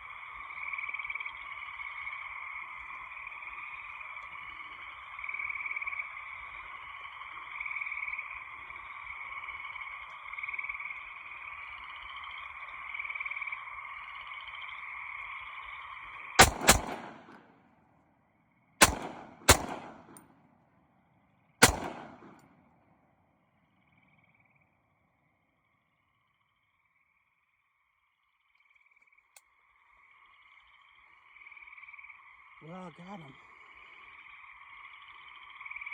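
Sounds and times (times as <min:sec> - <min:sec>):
night chorus of calling animals: 0:00.0 - 0:17.4, 0:18.6 - 0:20.2, 0:21.6 - 0:22.4, 0:23.6 - 0:35.9
gunshots with echo: 0:16.4 - 0:17.5, 0:18.8 - 0:20.2, 0:21.6 - 0:22.4.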